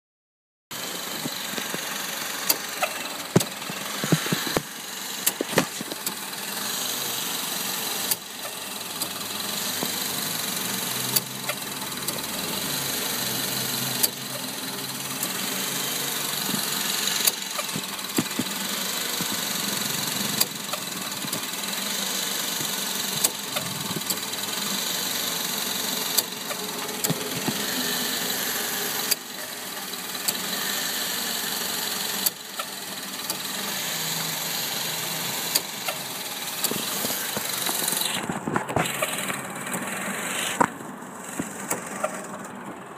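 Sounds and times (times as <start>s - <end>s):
car running noise: 0.8s - 42.9s
sharp clicks and knocks: 2.4s - 6.2s, 16.5s - 18.6s.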